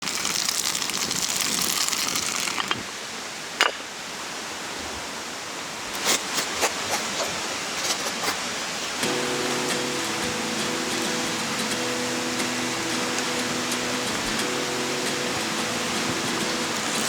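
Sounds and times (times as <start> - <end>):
campfire crackling and popping: 0.0 - 2.9, 9.0 - 17.0
steady hiss: 0.0 - 17.0.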